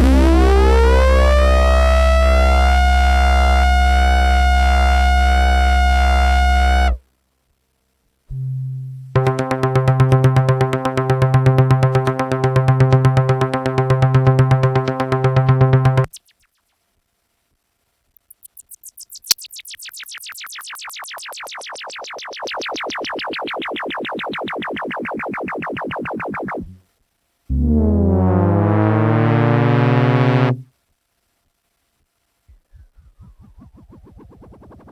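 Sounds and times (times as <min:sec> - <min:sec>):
buzzy throbbing synthesizer note: 0:00.0 - 0:07.0, 0:08.3 - 0:16.2, 0:27.5 - 0:30.7, 0:32.5 - 0:34.9
fast-pulsing synthesizer tone: 0:00.0 - 0:07.0, 0:09.2 - 0:16.6, 0:18.2 - 0:26.8, 0:27.5 - 0:30.6, 0:32.5 - 0:34.9.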